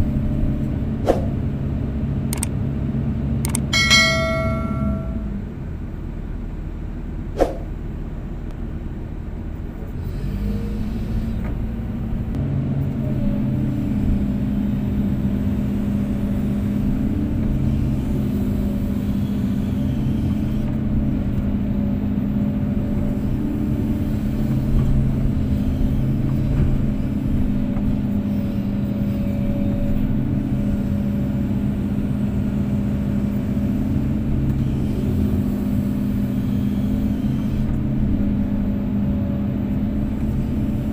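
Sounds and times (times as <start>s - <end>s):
excavator diesel engine running: 0.0s - 40.9s
sharp metallic knock: 3.8s - 5.4s.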